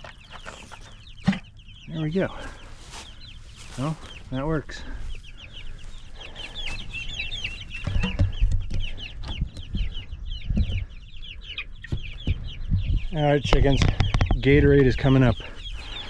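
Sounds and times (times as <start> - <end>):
chicks peeping: 0.0 - 16.0
low rumbling and knocks: 7.8 - 11.0, 11.8 - 14.8.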